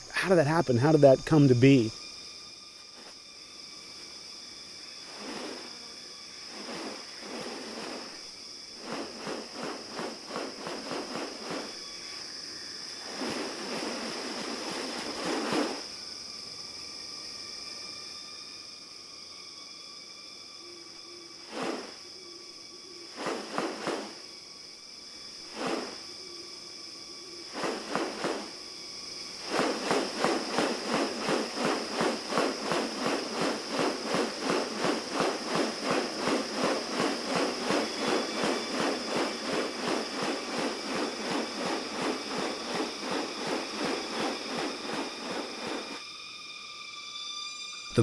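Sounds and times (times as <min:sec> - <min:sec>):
high insect drone: 0:00.0 - 0:48.0.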